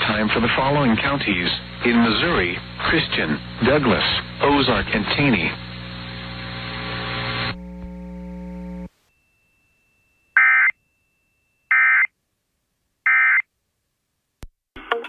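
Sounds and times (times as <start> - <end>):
steady hum: 0.0 - 9.5.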